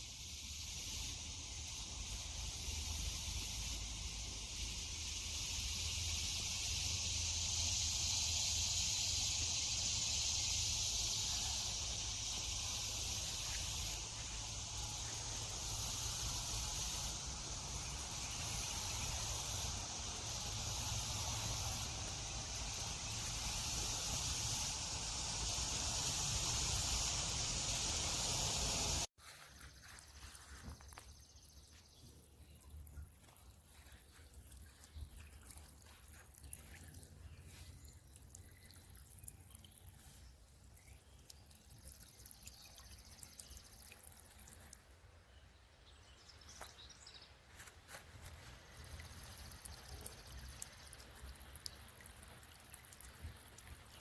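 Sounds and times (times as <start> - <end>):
high insect shimmer: 0.0 - 29.1
insect chorus hissing: 0.0 - 29.1, 46.2 - 54.0.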